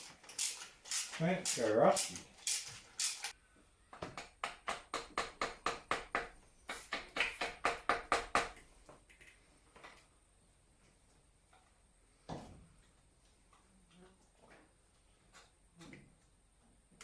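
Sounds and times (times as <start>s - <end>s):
cable ties ratcheting clicks: 0.2s - 3.3s.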